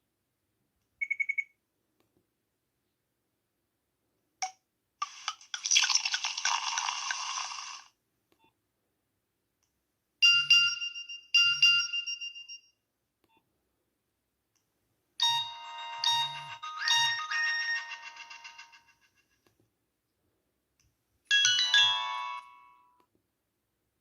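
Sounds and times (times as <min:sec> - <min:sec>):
chimes: 0:15.2 - 0:19.0, 0:21.3 - 0:23.0
phone ringtones and alert sounds: 0:15.2 - 0:19.1, 0:21.3 - 0:23.0.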